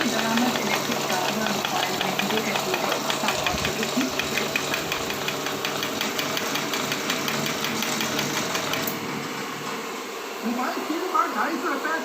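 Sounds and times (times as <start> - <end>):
fast regular ticking: 0.0 - 8.9
meat mincer motor hum: 0.0 - 10.4.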